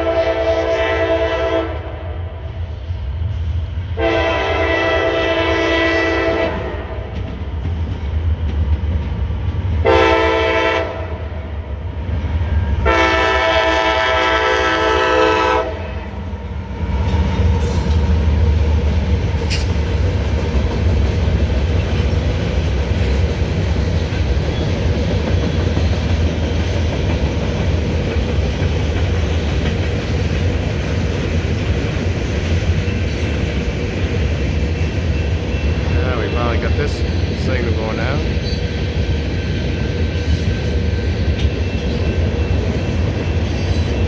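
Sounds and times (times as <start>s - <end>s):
locomotive air horn chord: 0.0s - 2.1s, 4.0s - 6.8s, 9.8s - 11.1s, 12.8s - 16.0s
freight train rumbling by: 0.0s - 44.0s
train wheels on rails: 2.5s - 10.8s, 11.4s - 44.0s.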